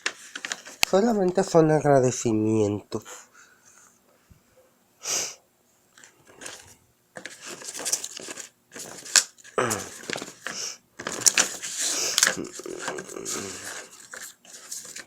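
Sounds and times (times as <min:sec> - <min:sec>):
packaging rustling and crinkling: 0:00.0 - 0:01.4, 0:06.0 - 0:15.0.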